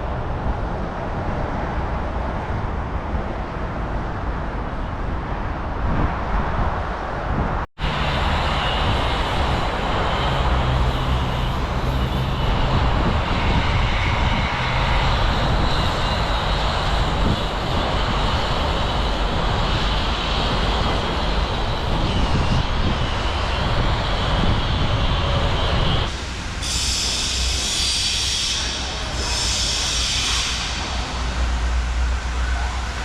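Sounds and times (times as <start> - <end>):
vehicle engine roar: 7.8 - 27.7
bright hiss: 26.1 - 32.4.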